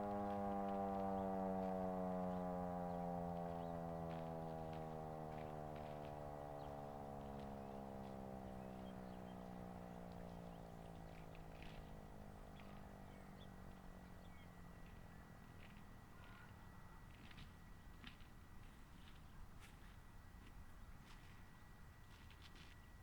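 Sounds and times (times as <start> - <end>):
warning siren winding down: 0.0 - 15.8.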